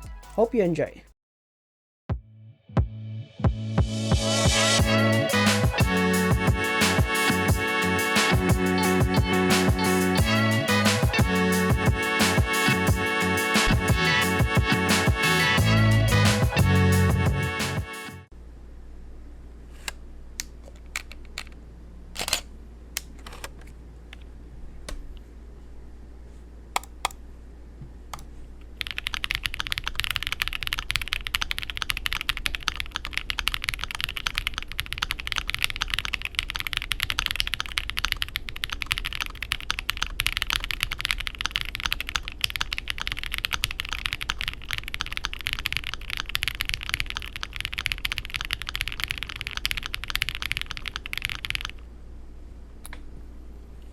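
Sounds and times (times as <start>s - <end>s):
mechanical keyboard typing: 28.8s - 51.8s.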